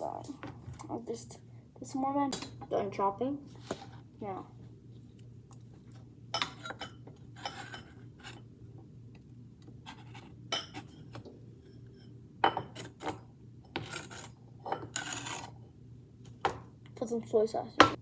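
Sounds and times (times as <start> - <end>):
cookware clattering: 6.4 - 7.9, 10.5 - 13.2
kitchen utensils clinking and scraping: 6.4 - 8.4, 9.9 - 13.2, 13.8 - 15.6.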